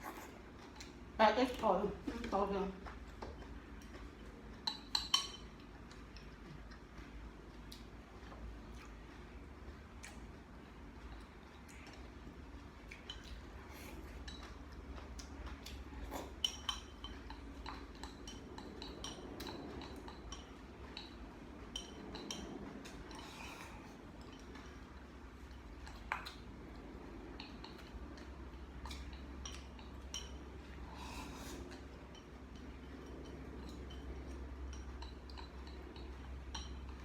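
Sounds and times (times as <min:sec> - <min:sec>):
cutlery clinking on a dish: 0:04.6 - 0:05.6.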